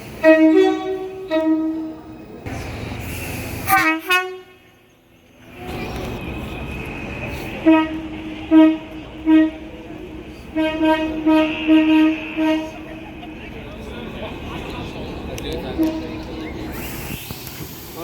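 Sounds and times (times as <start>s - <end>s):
train rumble: 0.0s - 18.0s
train horn blasts: 0.2s - 2.2s, 3.6s - 4.9s, 7.6s - 9.9s, 10.5s - 13.0s, 15.8s - 16.2s.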